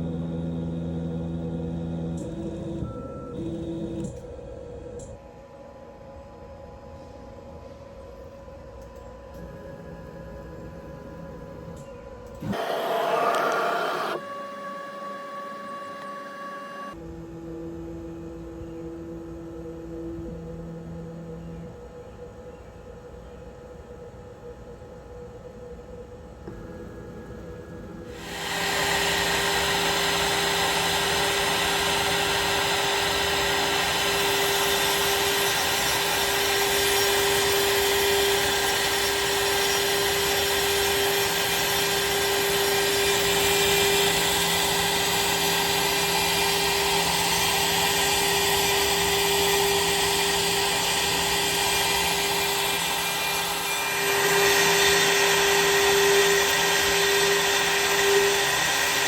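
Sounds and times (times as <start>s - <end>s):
router spindle whining while milling: 12.3s - 22.2s, 28.0s - 59.0s.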